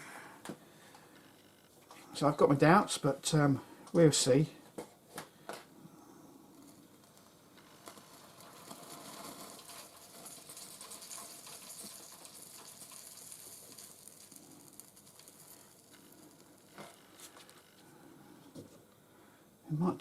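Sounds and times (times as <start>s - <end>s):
flux sizzling and crackling: 6.2s - 17.9s.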